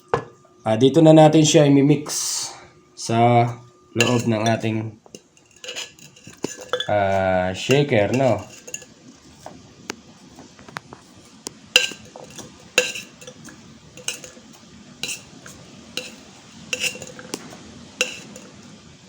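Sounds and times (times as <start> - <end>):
kitchenware clinking and knocking: 4.0 - 9.0, 11.8 - 18.6.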